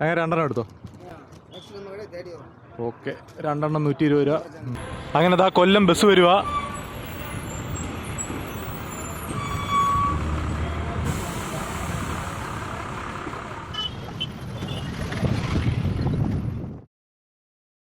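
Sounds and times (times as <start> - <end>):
bus engine running: 4.8 - 15.1
air brakes hissing: 6.4 - 12.8.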